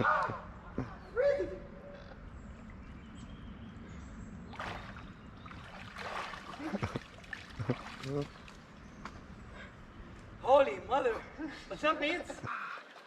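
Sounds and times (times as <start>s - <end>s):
water splashing and sloshing: 2.3s - 9.3s.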